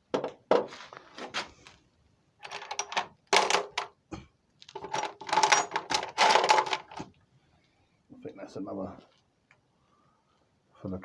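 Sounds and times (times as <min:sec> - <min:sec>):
metal parts clinking in a box: 0:02.4 - 0:03.9, 0:04.8 - 0:07.0.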